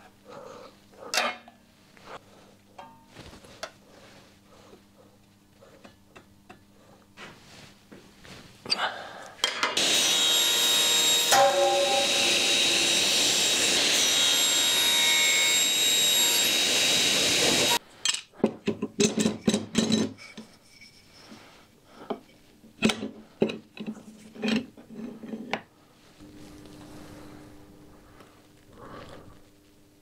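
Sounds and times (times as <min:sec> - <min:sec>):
circular saw cutting wood: 0:09.8 - 0:17.8.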